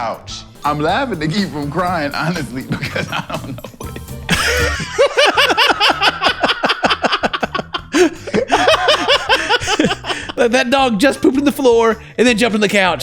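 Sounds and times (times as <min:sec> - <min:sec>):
high-pitched laughter: 0:02.8 - 0:10.4.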